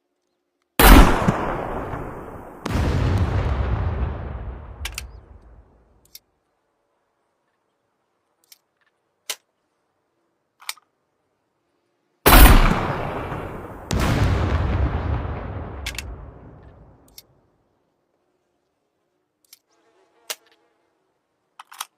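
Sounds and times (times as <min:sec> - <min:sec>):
heavy boom: 0:01.0 - 0:05.6, 0:12.3 - 0:17.0.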